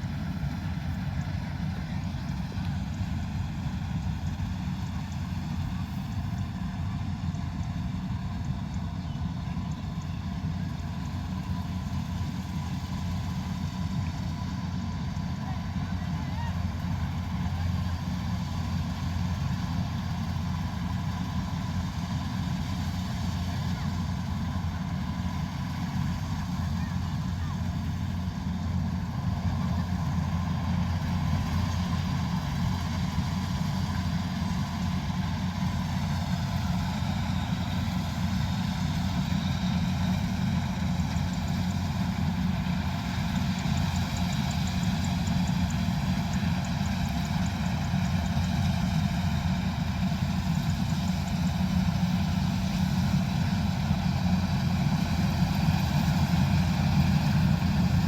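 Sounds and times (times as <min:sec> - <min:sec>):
diesel engine droning: 0:00.0 - 0:58.0.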